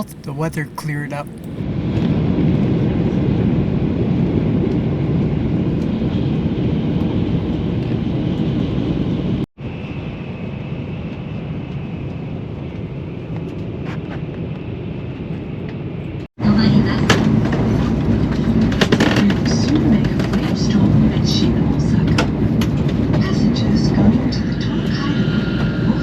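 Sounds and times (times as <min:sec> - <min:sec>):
train rumble from inside cabin: 0:16.5 - 0:26.0.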